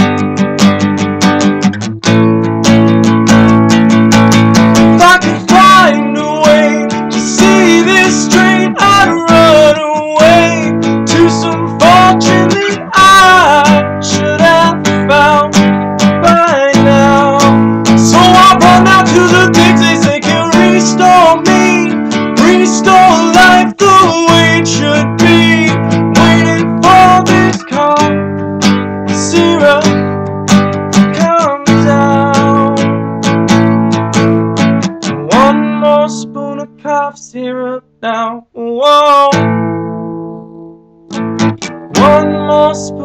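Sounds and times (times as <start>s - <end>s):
acoustic guitar strumming: 0.0s - 43.0s
person singing wordlessly: 4.8s - 30.2s, 30.8s - 33.1s, 35.0s - 39.5s, 41.9s - 43.0s.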